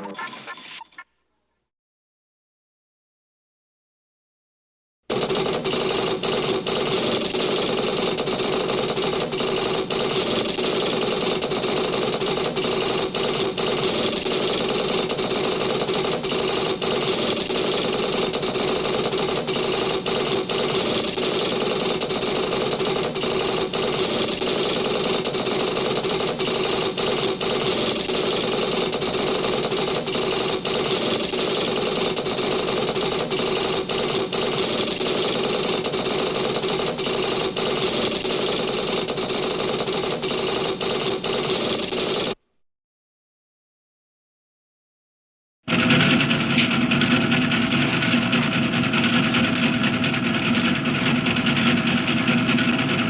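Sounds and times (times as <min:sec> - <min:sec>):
fluttering mechanical hum: 0:05.2 - 0:42.4.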